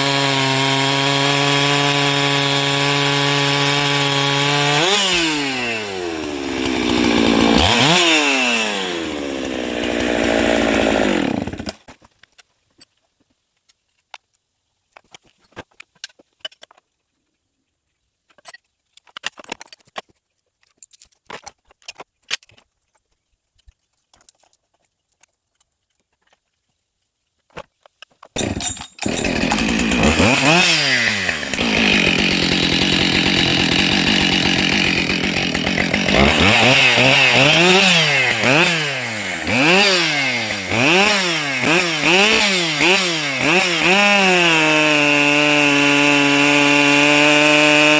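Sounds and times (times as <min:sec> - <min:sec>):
chainsaw revving: 0:00.0 - 0:11.8, 0:28.4 - 0:47.9.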